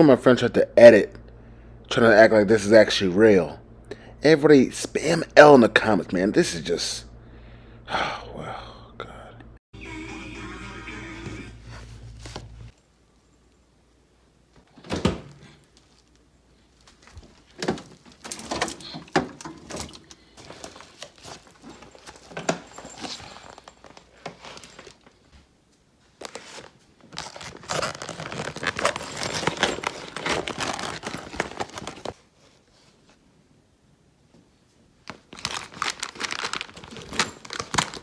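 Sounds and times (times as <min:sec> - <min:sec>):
rustling and crinkling handling: 0:11.6 - 0:12.8, 0:15.6 - 0:33.3, 0:35.0 - 0:38.0.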